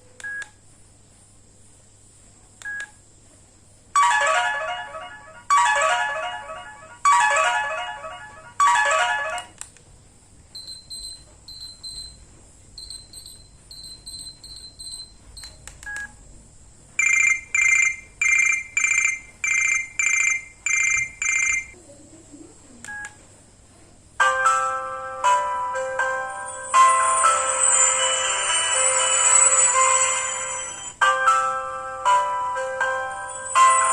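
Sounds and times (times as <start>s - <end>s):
melodic phone ringtone: 4.0s - 9.6s, 17.0s - 21.8s, 24.2s - 33.9s
phone rings: 17.0s - 21.8s, 24.3s - 33.9s.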